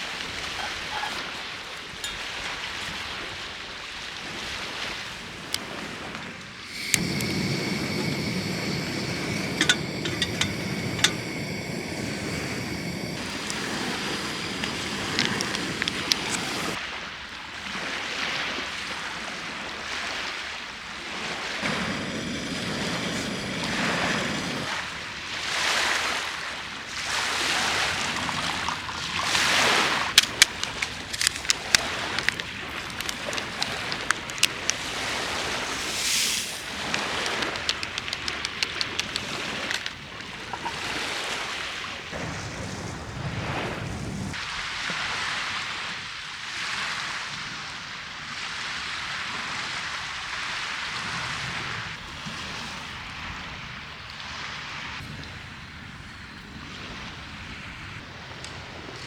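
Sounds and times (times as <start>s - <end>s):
sea waves washing onto shore: 0.0s - 55.1s
sharp clicks: 6.6s - 16.8s, 30.1s - 34.8s, 36.8s - 40.0s
steady high tones: 6.6s - 16.8s.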